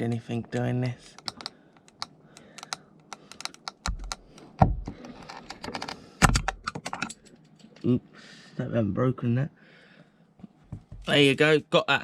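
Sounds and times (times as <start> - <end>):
screwdriver prying plastic trim: 2.6 - 6.8.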